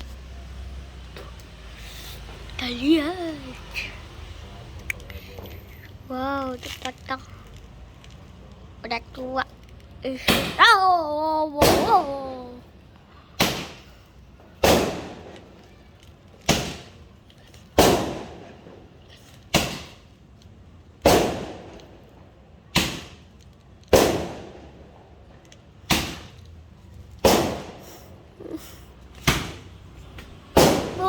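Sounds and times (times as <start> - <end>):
firecrackers banging with echo: 11.6 - 12.3, 13.4 - 20.1, 21.0 - 26.4, 27.2 - 31.0.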